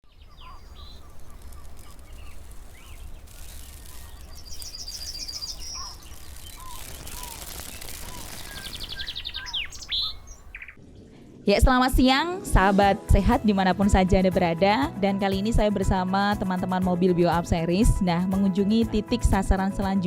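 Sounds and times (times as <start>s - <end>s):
small birds chirping: 0.0s - 11.1s.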